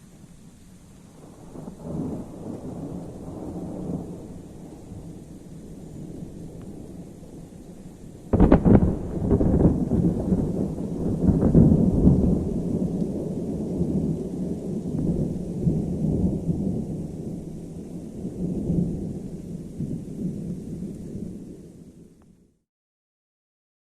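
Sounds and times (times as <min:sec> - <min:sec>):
faint rain hiss: 0:00.0 - 0:22.6
thunder crash and rumble: 0:08.3 - 0:17.4.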